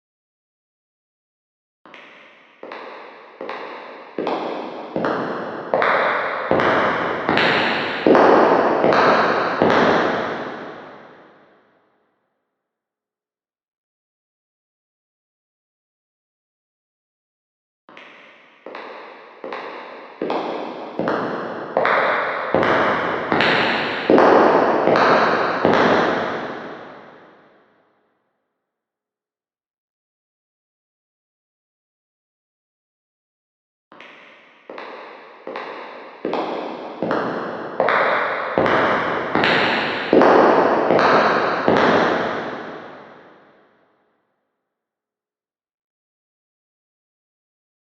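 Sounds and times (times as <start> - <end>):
echoing footsteps: 2.0 - 11.2, 18.4 - 27.2, 34.4 - 43.4.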